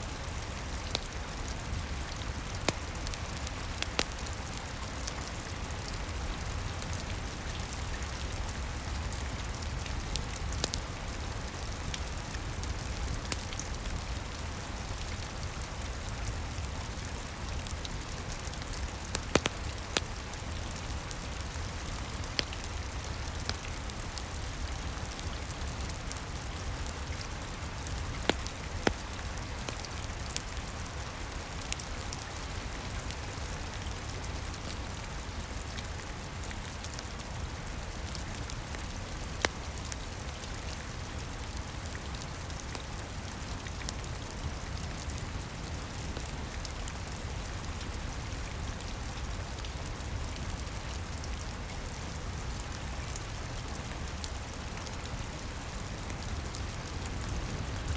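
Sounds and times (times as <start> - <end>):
steady rain: 0.0 - 57.9
wood fire crackling: 0.1 - 33.6.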